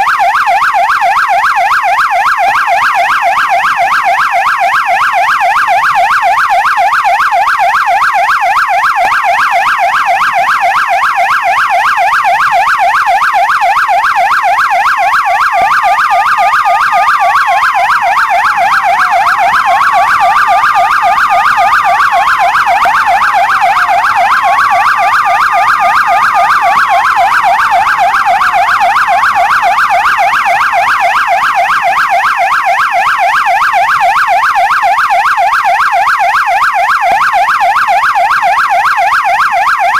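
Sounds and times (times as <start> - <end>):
police siren yelping: 0.0 - 39.9
wailing siren: 0.0 - 39.9.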